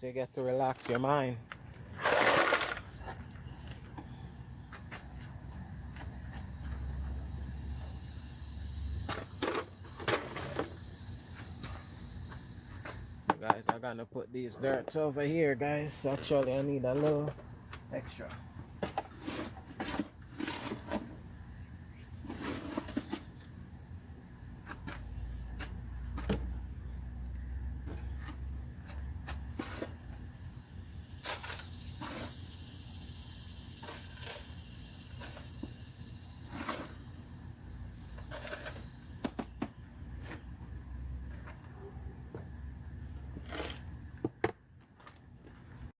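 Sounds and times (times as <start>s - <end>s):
soil scooped into pots: 14.9s - 26.6s, 27.7s - 39.3s, 40.0s - 42.0s, 42.9s - 44.2s.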